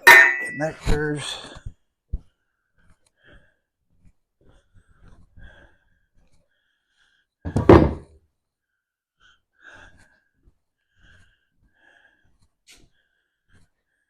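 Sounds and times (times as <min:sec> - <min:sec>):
loud thunk: 0:07.5 - 0:08.1.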